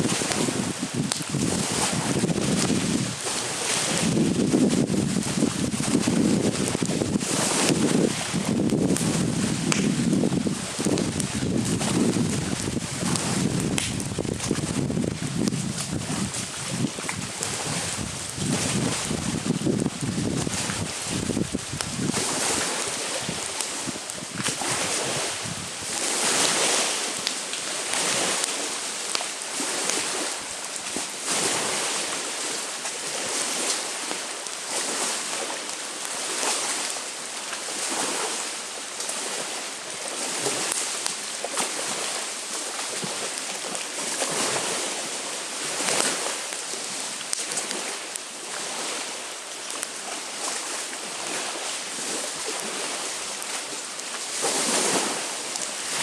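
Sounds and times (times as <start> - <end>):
wind buffeting microphone: 0.0 - 27.3
lake waves washing onto shore: 0.0 - 56.0.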